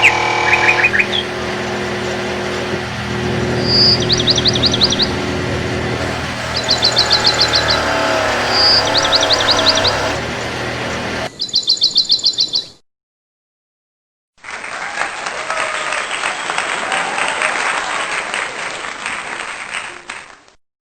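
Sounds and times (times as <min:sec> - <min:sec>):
clapping applause: 0:14.4 - 0:20.6.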